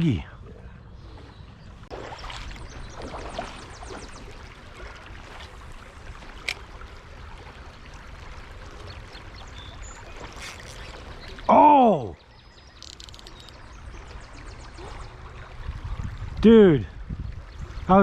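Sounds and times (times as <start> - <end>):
creek water running: 0.0 - 18.0
wind rumbling on microphone: 12.3 - 18.0
faint ticks: 12.8 - 13.6.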